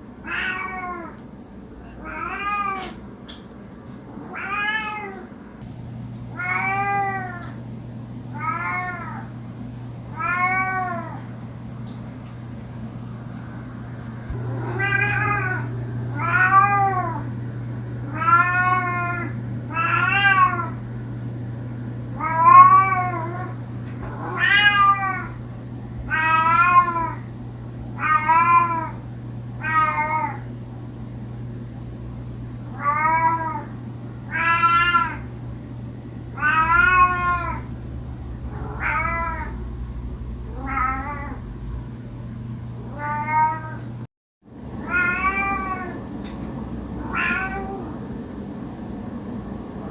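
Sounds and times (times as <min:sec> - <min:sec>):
steady low hum: 0:00.0 - 0:49.9
cat meowing: 0:00.2 - 0:01.2, 0:01.9 - 0:03.0, 0:04.3 - 0:05.3, 0:14.3 - 0:17.3, 0:18.0 - 0:20.8, 0:22.2 - 0:25.4, 0:34.3 - 0:35.3, 0:36.3 - 0:37.7, 0:38.4 - 0:41.5, 0:42.9 - 0:43.9, 0:44.8 - 0:46.0, 0:47.0 - 0:48.0.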